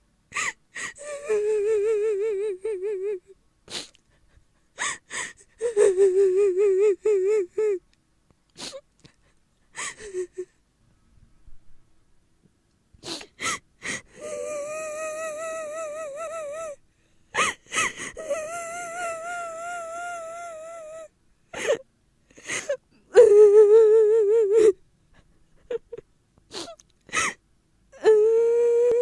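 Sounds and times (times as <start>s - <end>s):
wavering wailing cries: 0.3s - 3.3s, 4.8s - 7.8s, 13.4s - 16.8s, 17.4s - 21.8s, 22.4s - 24.8s, 28.0s - 29.0s.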